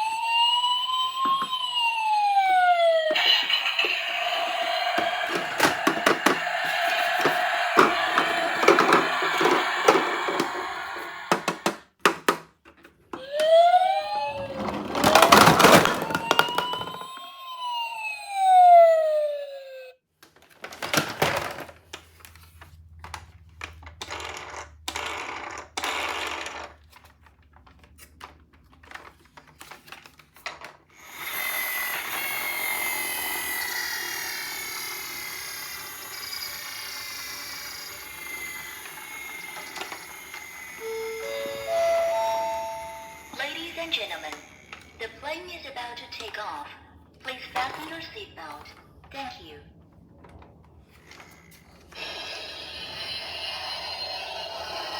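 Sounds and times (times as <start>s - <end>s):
electronic siren with falling pitches: 0.0s - 11.6s, 13.2s - 20.0s, 31.1s - 44.9s
toy electronic sirens wailing: 0.0s - 11.8s, 13.1s - 20.0s, 31.0s - 45.2s, 51.1s - 54.9s
clicks and rattles of toys: 3.2s - 13.0s, 14.6s - 17.2s, 20.2s - 41.0s
plastic clatter: 14.5s - 17.0s, 20.2s - 22.4s.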